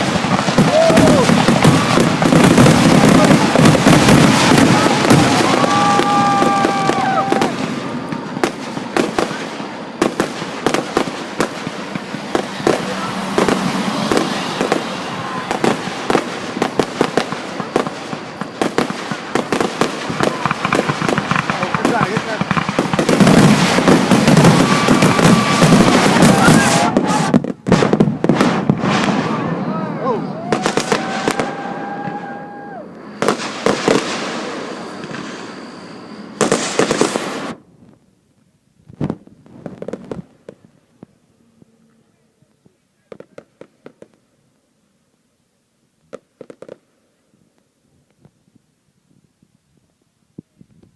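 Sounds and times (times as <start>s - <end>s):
fireworks bangs: 0.0s - 38.2s, 38.8s - 44.4s, 46.0s - 47.2s
fireworks crackle: 0.0s - 50.9s
faint firework pops: 38.9s - 41.7s, 42.6s - 44.2s.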